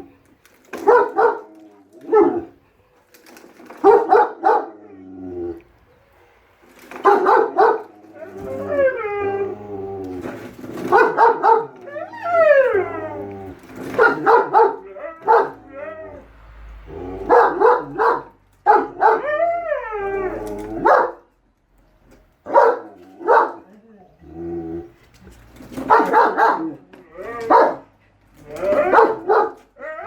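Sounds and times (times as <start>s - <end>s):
dogs barking: 0.7s - 2.6s, 3.7s - 4.8s, 6.9s - 8.0s, 10.8s - 11.8s, 13.8s - 16.2s, 16.9s - 19.4s, 20.8s - 21.3s, 22.4s - 23.7s, 25.7s - 29.9s
dogs howling: 7.5s - 10.3s, 10.9s - 21.1s, 28.4s - 30.0s.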